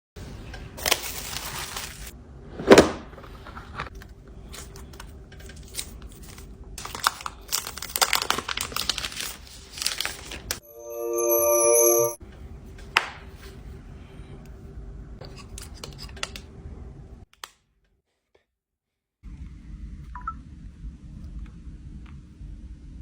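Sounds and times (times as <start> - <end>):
packaging crinkling and tearing: 6.8 - 10.3
chime: 10.6 - 12.2.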